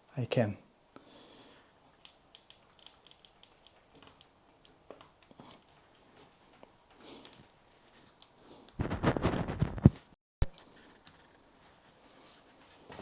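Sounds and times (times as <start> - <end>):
small clicks: 2.0 - 5.8.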